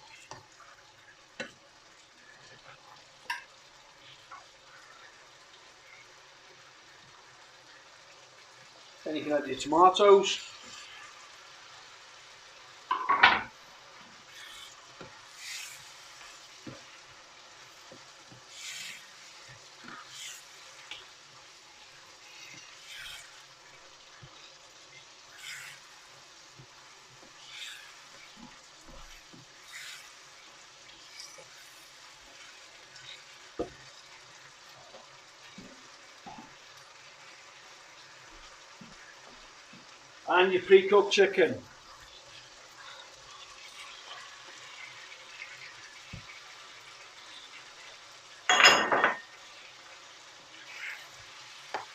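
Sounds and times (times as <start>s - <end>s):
vegetables sizzling in frying pan: 0.0s - 51.9s
spoon scraping pan: 14.2s - 17.0s, 17.6s - 21.2s, 22.0s - 23.5s, 24.1s - 26.2s, 27.3s - 30.3s, 30.9s - 34.2s.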